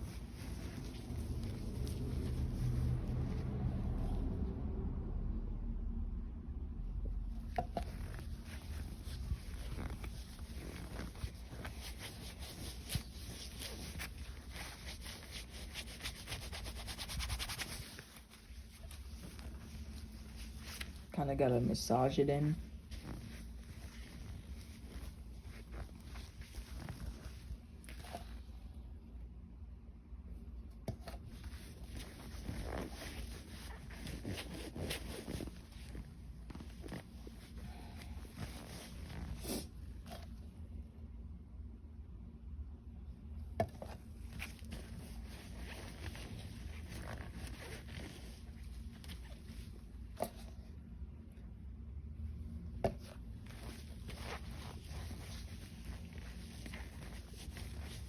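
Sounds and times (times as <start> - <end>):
hands rubbing foam filter: 0.0 - 3.7, 7.5 - 21.1, 22.1 - 28.4, 31.0 - 40.3, 43.8 - 50.5, 52.8 - 58.0.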